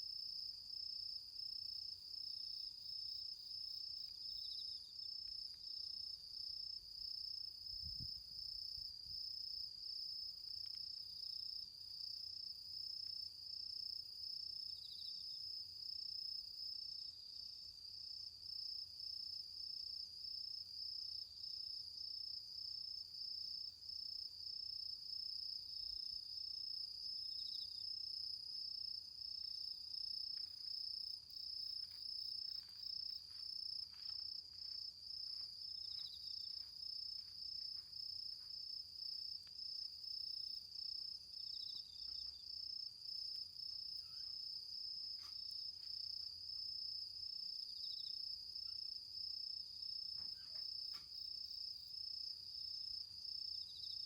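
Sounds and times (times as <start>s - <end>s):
insect chirp: 0.0s - 54.0s
insect high-pitched trill: 26.5s - 46.3s.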